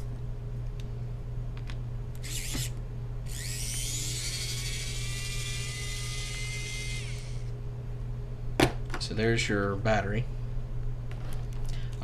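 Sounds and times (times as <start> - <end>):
small high-speed motor whirring: 2.2 - 7.5.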